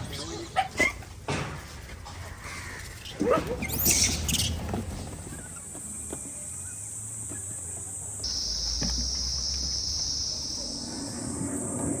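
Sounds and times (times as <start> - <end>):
high insect buzz: 8.2 - 12.0.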